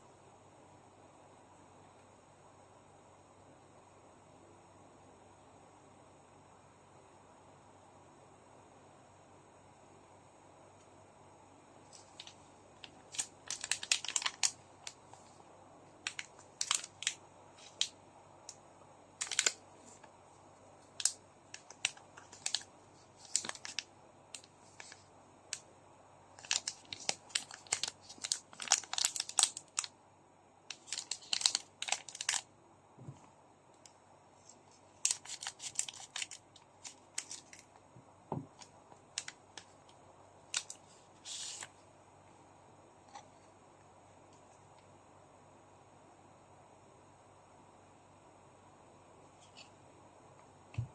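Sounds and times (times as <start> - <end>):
foil wrappers crinkling and tearing: 12.0 - 15.0, 16.0 - 17.9, 19.2 - 19.6, 21.0 - 23.8, 26.4 - 29.9, 30.7 - 32.4, 35.0 - 37.7.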